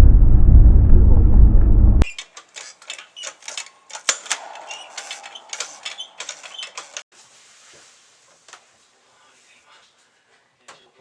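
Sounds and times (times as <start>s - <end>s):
mechanism clicking and knocking: 2.0s - 7.1s
squeaky creaks: 2.0s - 7.1s.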